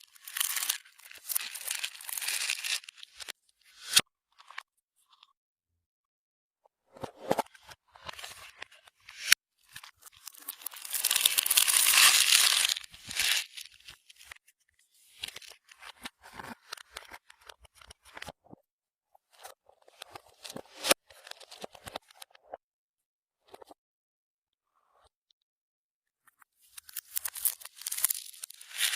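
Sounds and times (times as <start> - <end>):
slime crackling and tearing: 0.0 - 3.0, 10.2 - 13.7, 26.9 - 28.9.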